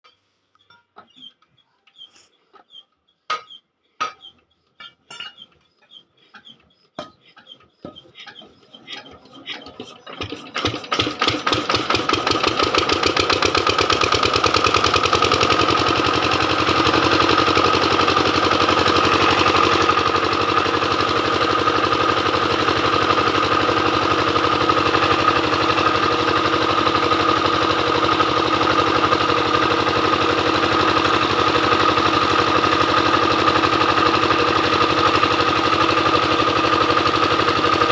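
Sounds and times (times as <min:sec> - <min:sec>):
diesel generator engine starting: 0:08.4 - 0:37.9.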